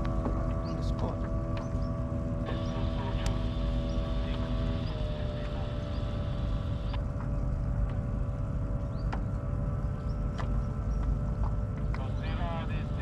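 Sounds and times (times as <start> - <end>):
engine drone: 0.0 - 13.0
water rumble: 0.0 - 13.0
wind rumble: 0.0 - 13.0
faint clicks: 3.0 - 3.5.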